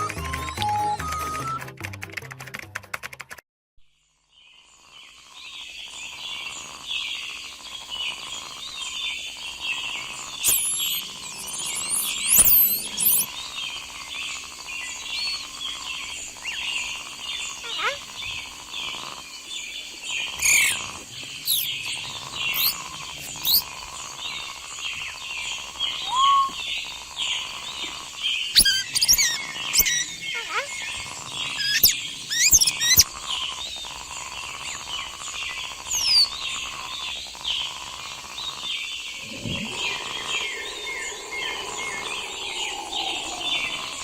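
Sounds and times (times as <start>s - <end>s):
sweeping whistled bird calls: 5.4s - 37.7s, 38.4s - 44.0s
birds chirping and calling: 6.1s - 44.0s
steady high hum: 39.0s - 44.0s.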